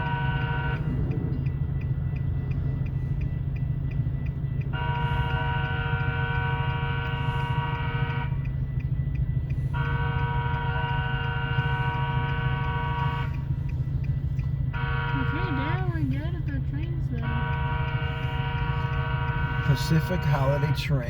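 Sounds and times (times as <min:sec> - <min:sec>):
train rumbling past: 0:00.0 - 0:20.6
train air horn chord: 0:04.8 - 0:08.4, 0:09.7 - 0:13.5.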